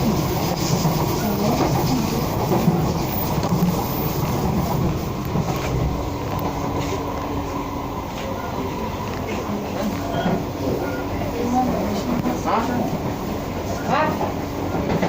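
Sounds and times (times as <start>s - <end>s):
train rumbling on rails: 0.0s - 15.0s.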